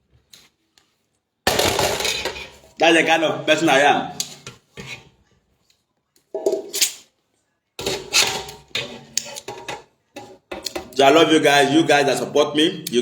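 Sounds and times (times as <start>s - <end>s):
cutlery scraping on plate: 2.0s - 2.7s, 4.2s - 5.2s, 6.4s - 7.0s, 7.8s - 11.0s.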